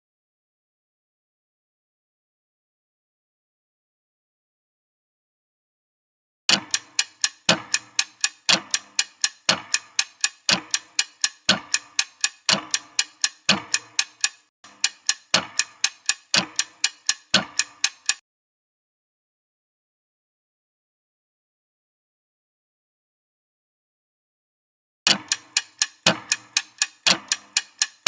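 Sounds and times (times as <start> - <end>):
clock ticking: 6.5 - 18.2, 25.1 - 28.0.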